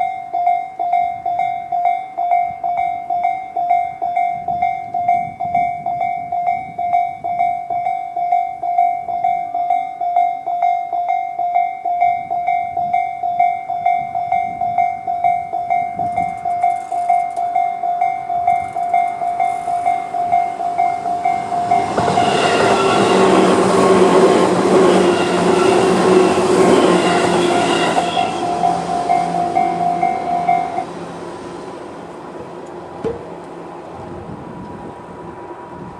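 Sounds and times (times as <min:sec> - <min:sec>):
electric train passing: 0:00.0 - 0:35.9
level crossing electronic alarm: 0:06.5 - 0:30.8.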